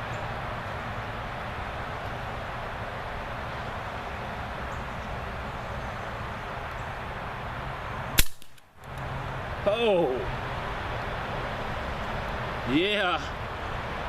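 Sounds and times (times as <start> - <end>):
outdoor background hiss: 0.0 - 14.0
air rifle shot: 8.2 - 8.7.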